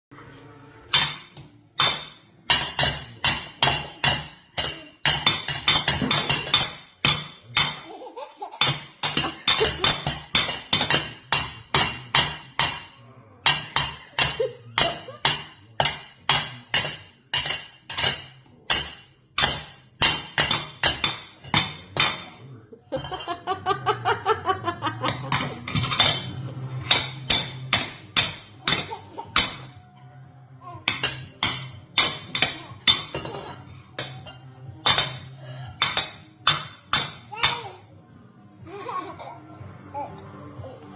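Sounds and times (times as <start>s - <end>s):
metal pot lids clanging: 25.1s - 29.6s.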